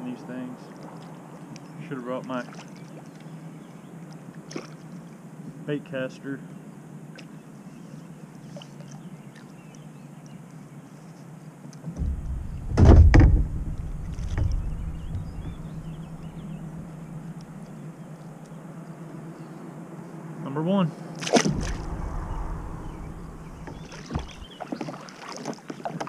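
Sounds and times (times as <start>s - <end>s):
thumps on plastic hull: 11.9s - 16.9s
low rumble: 11.9s - 17.8s, 21.3s - 24.6s.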